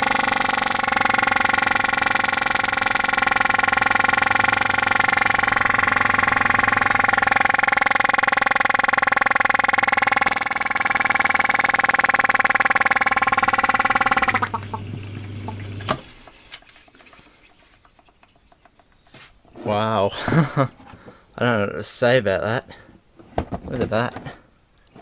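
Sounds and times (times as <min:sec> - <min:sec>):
compressor whining: 0:00.0 - 0:21.3.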